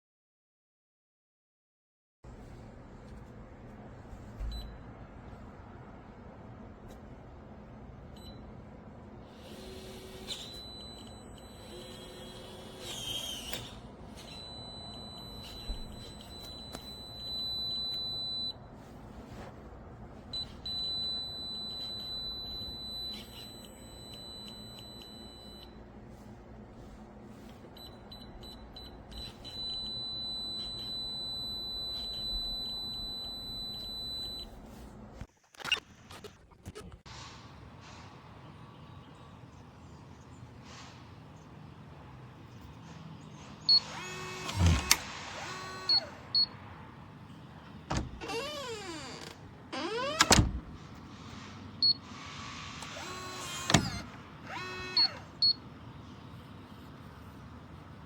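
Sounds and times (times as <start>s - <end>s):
keypad lock beeping: 10.3s - 12.4s, 14.2s - 18.6s, 20.4s - 25.8s, 27.8s - 34.5s, 53.0s - 55.6s.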